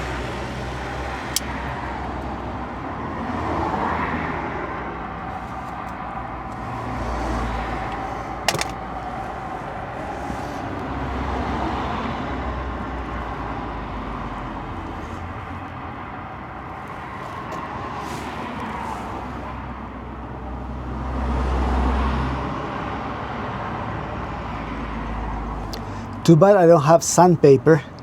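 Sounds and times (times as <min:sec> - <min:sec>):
road vehicle rumble: 0:00.0 - 0:28.0.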